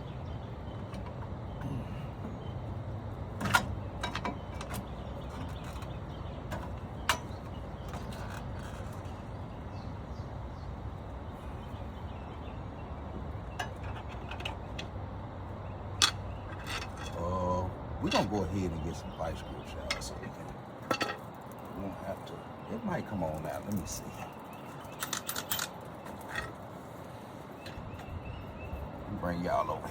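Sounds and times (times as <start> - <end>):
steady low hum: 0.0 - 29.9
hand tools clicking on metal: 24.8 - 26.6.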